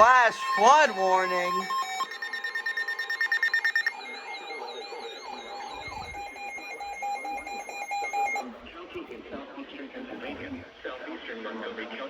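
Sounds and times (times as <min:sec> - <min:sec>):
electronic alert beeps: 0:00.0 - 0:08.4
warbling alert tone: 0:00.0 - 0:08.4.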